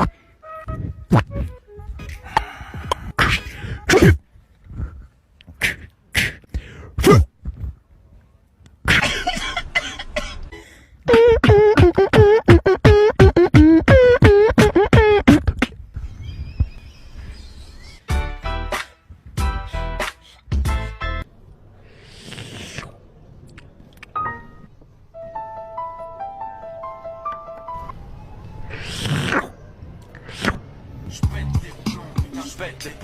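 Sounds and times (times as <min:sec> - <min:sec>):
comedy fart sounds: 0:11.1 - 0:15.8, 0:28.7 - 0:29.5.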